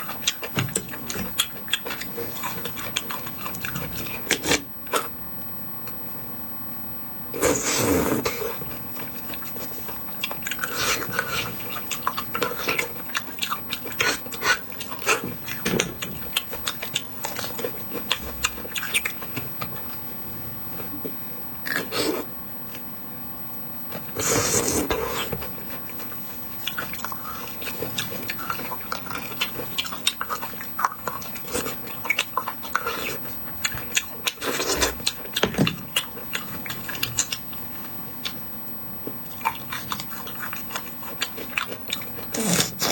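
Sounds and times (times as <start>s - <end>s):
wet chewing and smacking: 0.0s - 5.1s, 8.6s - 20.1s, 24.8s - 42.9s.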